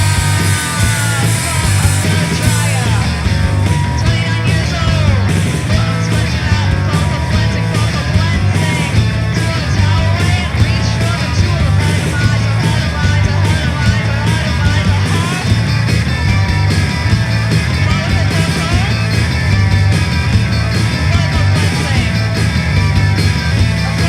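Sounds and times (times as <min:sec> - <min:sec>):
person singing: 0:00.0 - 0:15.5
bass guitar: 0:00.0 - 0:24.0
distorted electric guitars: 0:00.0 - 0:24.0
drums at a driving beat: 0:00.0 - 0:24.0.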